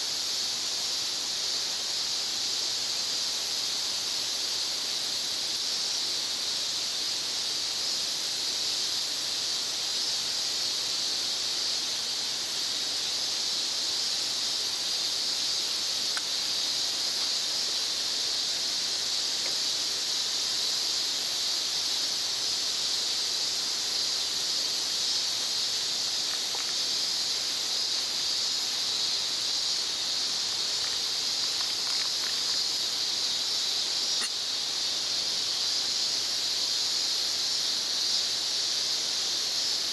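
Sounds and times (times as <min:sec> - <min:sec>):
insects shrilling: 0:09.9 - 0:39.9.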